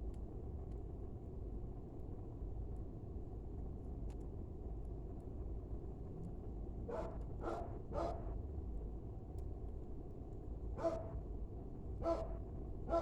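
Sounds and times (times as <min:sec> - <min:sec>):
dog barking: 0:06.9 - 0:08.3, 0:10.8 - 0:11.2, 0:12.0 - 0:13.0.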